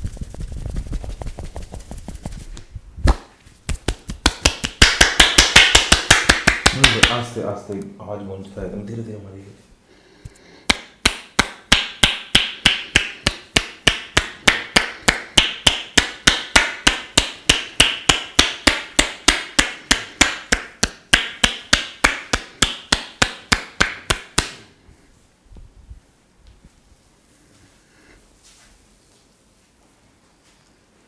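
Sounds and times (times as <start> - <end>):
hands striking in percussion massage: 0.0 - 2.4, 3.1 - 7.3, 10.7 - 24.7.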